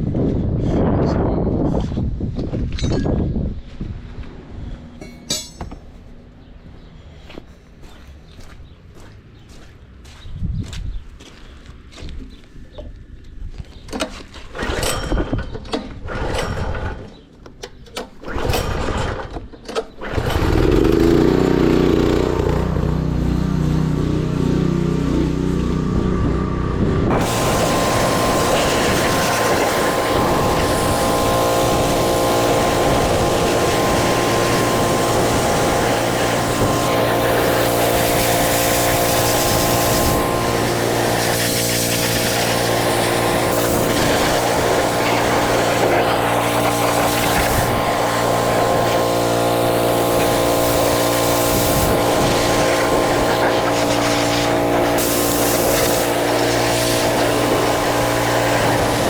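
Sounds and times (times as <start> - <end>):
pressure washer motor drone: 20.0 - 59.0
water spraying: 27.1 - 59.0.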